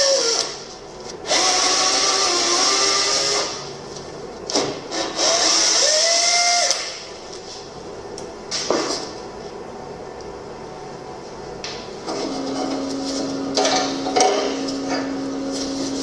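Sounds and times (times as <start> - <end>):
power tool motor whine: 1.2 - 3.7, 4.9 - 6.9.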